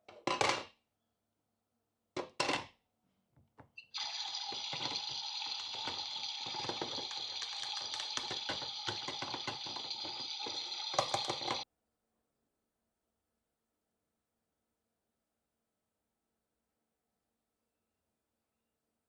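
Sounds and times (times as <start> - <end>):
toy faucet running water: 4.0 - 11.6.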